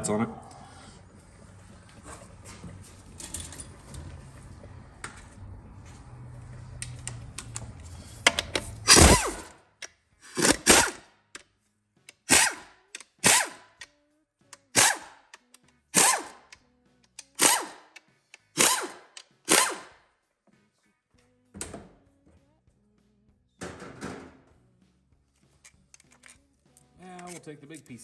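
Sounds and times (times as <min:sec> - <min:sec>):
power tool short bursts: 0:08.9 - 0:09.5, 0:18.6 - 0:19.9.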